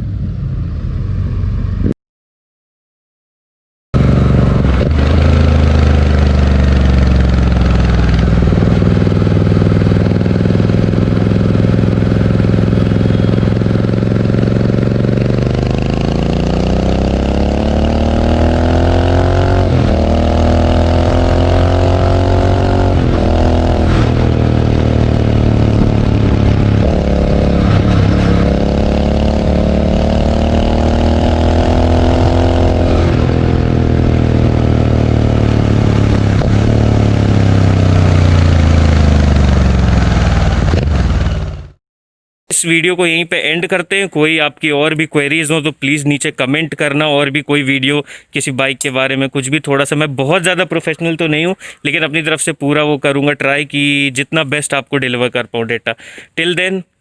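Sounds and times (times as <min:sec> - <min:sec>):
motorcycle engine revving: 0:04.0 - 0:41.8.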